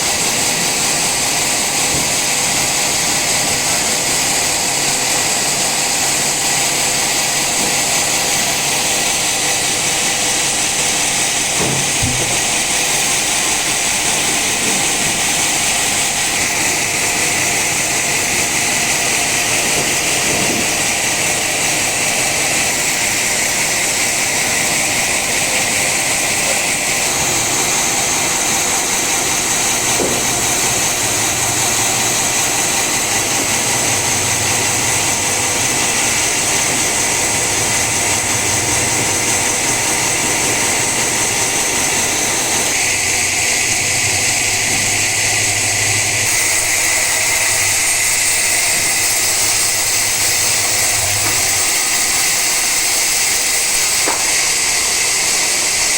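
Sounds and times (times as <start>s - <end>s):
saw blade hissing through wood: 0.0s - 55.9s.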